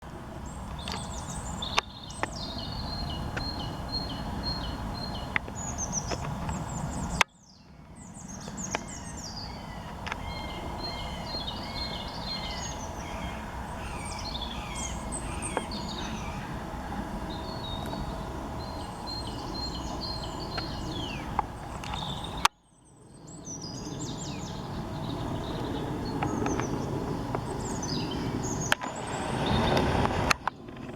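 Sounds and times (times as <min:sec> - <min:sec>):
small birds singing and calling: 0:00.1 - 0:30.9.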